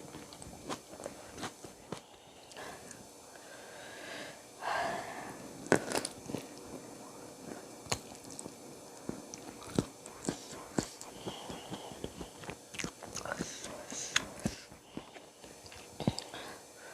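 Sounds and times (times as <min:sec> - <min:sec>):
person chewing with crisp snaps: 0:00.0 - 0:03.0, 0:05.6 - 0:06.8, 0:07.4 - 0:16.4
breathy hiss: 0:01.0 - 0:07.9, 0:08.6 - 0:16.9.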